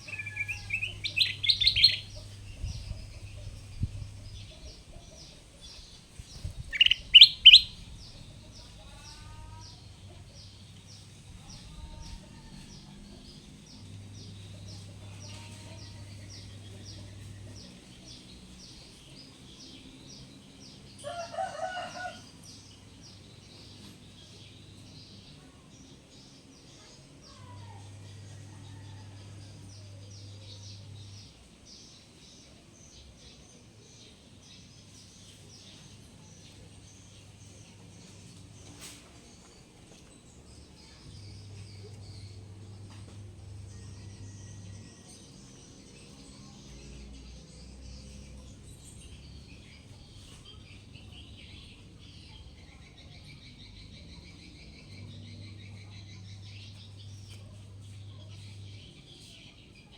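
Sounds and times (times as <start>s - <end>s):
high bird chirps: 0.0s - 2.2s, 6.7s - 7.8s
bird chirping: 0.0s - 9.5s.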